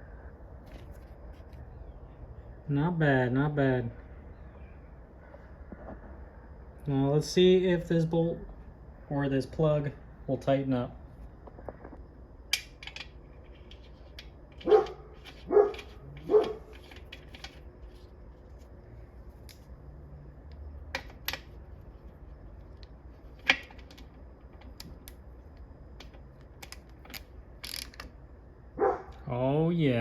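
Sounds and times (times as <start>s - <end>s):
dog barking: 14.6s - 16.6s, 28.8s - 29.2s.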